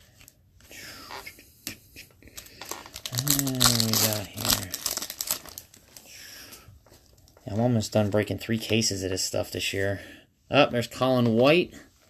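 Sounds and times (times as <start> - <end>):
foil wrappers crinkling and tearing: 2.3 - 6.2.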